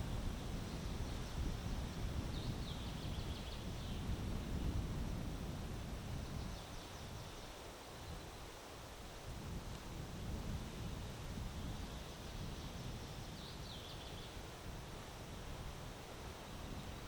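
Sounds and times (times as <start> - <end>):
wind rumbling on microphone: 0.0 - 17.0
small bird chirping: 11.8 - 14.4.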